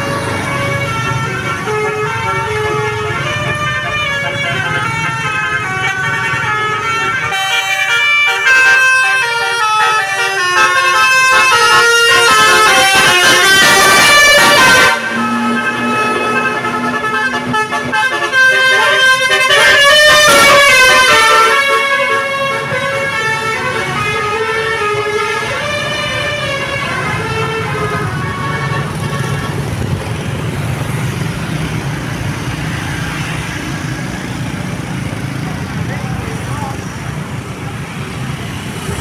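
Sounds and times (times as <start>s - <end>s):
bus horn playing a tune: 0.0s - 29.9s
engine noise: 0.0s - 39.0s.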